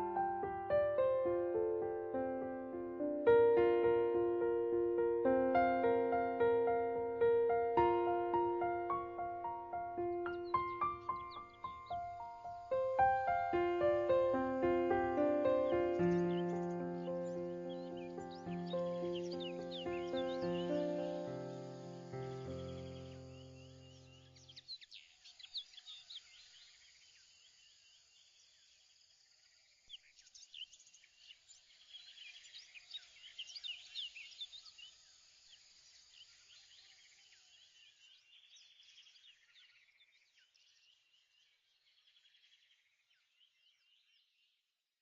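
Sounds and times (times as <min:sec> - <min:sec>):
birds chirping: 0:00.0 - 0:24.7.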